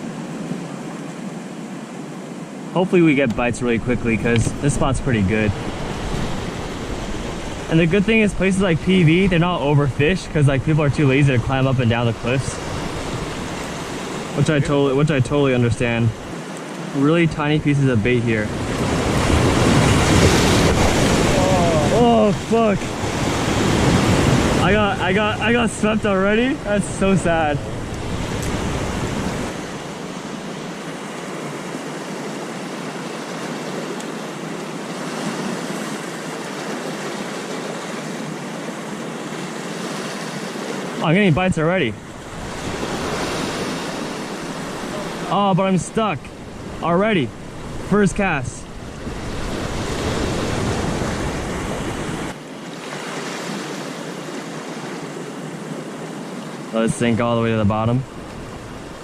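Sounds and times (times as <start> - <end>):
surf washing against rocks: 0.0 - 59.0
wind rumbling on microphone: 18.0 - 31.1, 41.4 - 45.2, 46.2 - 52.4.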